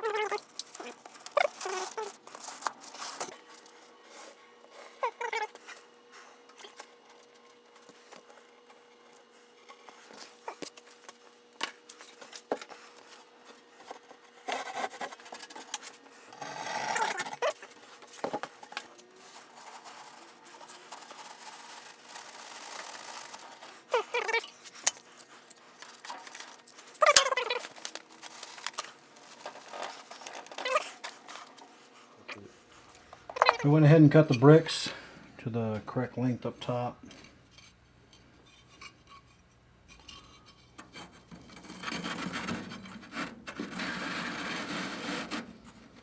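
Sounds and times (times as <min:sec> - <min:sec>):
scrape: 0:12.0 - 0:26.6, 0:40.0 - 0:45.9.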